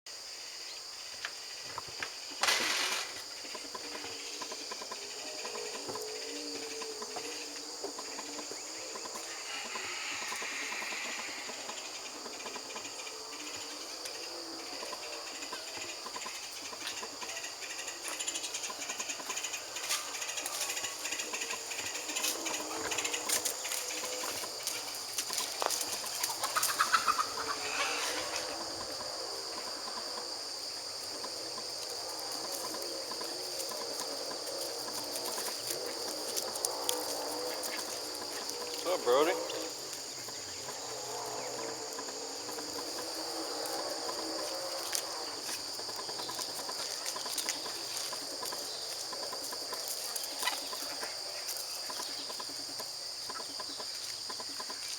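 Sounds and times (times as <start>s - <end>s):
high insect drone: 0.1s - 54.9s
animal or bird calls: 26.2s - 28.7s.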